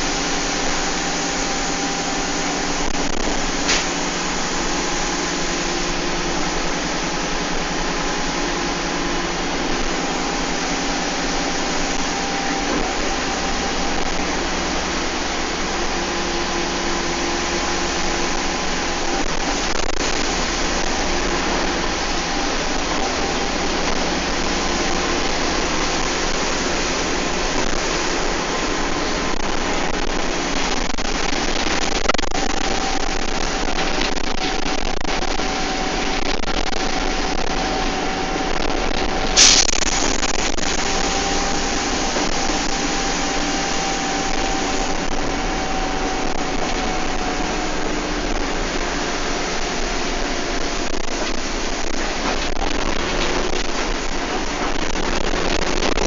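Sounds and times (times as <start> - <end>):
bus engine and road noise: 0.0 - 56.0
steady whine: 0.0 - 56.0
sharp bang: 39.4 - 40.6.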